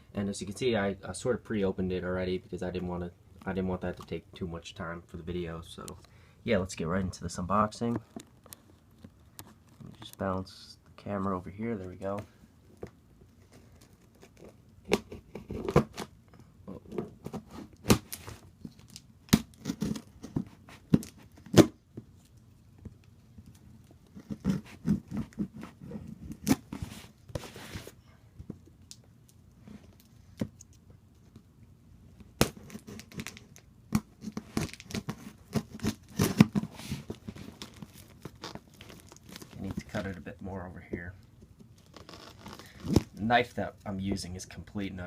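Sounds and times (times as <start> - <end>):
cardboard tearing and crinkling: 17.3 - 21.8, 32.4 - 33.6, 34.2 - 40.0.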